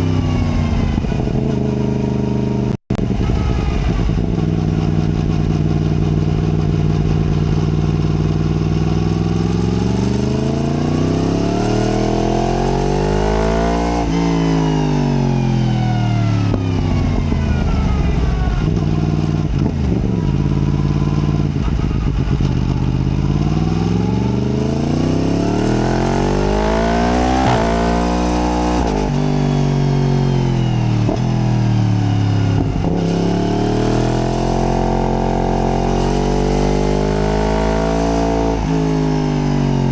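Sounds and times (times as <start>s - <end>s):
exhaust cracks: 0.0s - 23.8s
motorcycle engine revving: 0.0s - 39.9s.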